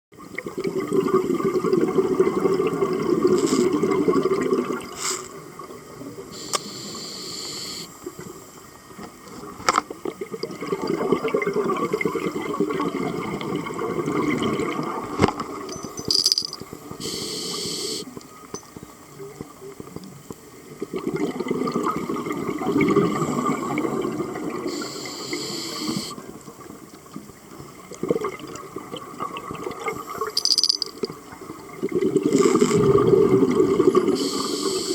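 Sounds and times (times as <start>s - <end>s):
exhaled bubbles gurgling: 0.2s - 6.3s, 10.0s - 15.6s, 20.7s - 25.1s, 31.2s - 34.8s
regulator hissing inhalations: 6.4s - 7.9s, 17.0s - 18.0s, 24.7s - 26.2s, 34.2s - 34.9s.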